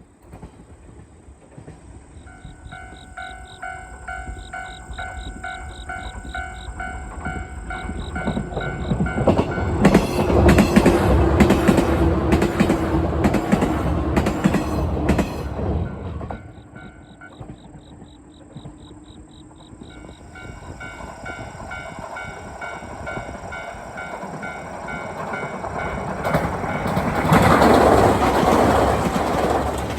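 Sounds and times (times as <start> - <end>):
electric train passing: 0.0 - 29.9
wheels clacking over rail joints: 0.0 - 29.9
level crossing warning bell: 2.2 - 11.8, 15.9 - 17.8, 18.5 - 28.1.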